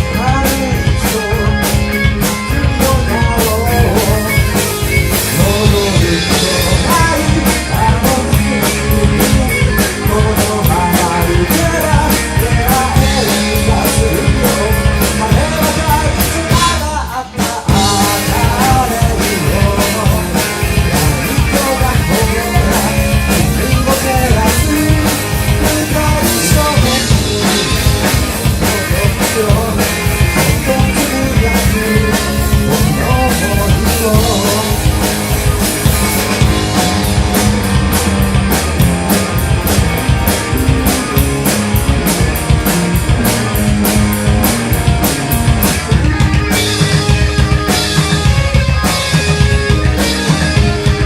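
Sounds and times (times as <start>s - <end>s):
rock band playing: 0.0s - 51.0s.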